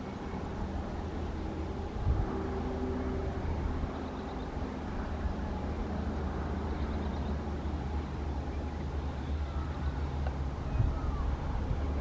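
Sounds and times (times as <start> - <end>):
faint engine hum: 0.0 - 12.0.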